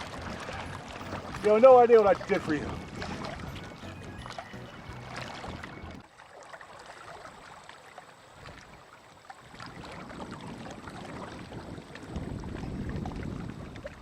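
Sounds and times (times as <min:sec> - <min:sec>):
wind buffeting microphone: 0:00.0 - 0:06.0, 0:09.5 - 0:14.0
water lapping against rocks: 0:00.0 - 0:14.0.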